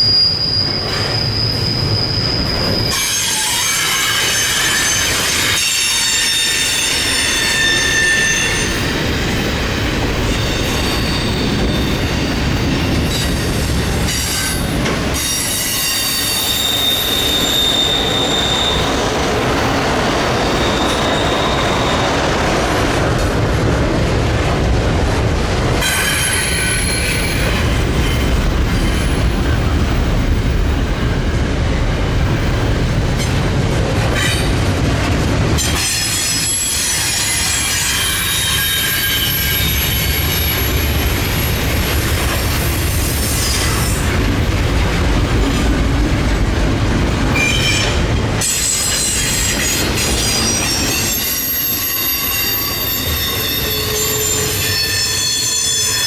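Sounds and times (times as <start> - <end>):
high-pitched wheel squeal: 0.0 - 8.9, 15.2 - 22.2, 47.4 - 56.0
freight train rumbling past: 0.0 - 56.0.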